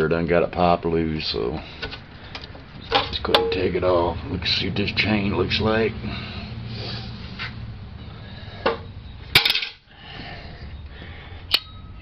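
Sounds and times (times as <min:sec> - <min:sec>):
metal parts clinking and clanking: 0:09.3 - 0:09.8.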